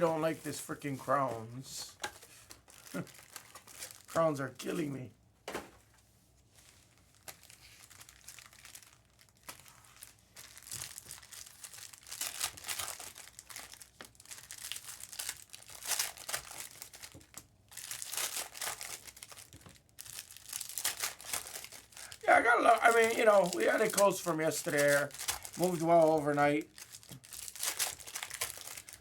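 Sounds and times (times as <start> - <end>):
wrappers crinkling: 0.0 - 5.0, 6.5 - 29.0
cards being handled: 20.8 - 29.0.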